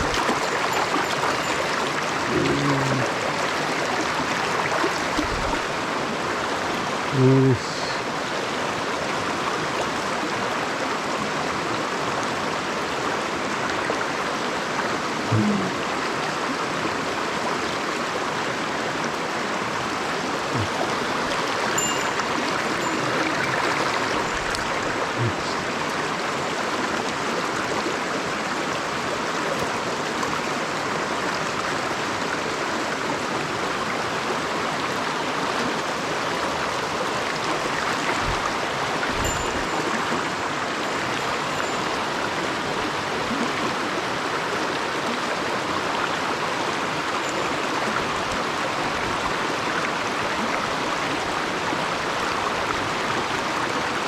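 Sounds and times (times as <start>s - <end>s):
stream rushing over rocks: 0.0s - 54.0s.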